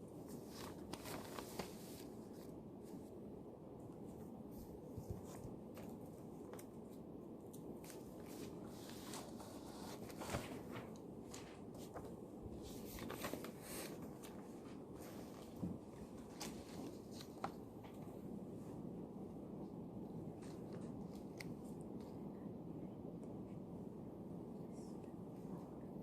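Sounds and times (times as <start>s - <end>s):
low room noise: 0.0s - 26.0s
paper rustling: 0.2s - 3.1s, 4.0s - 18.1s.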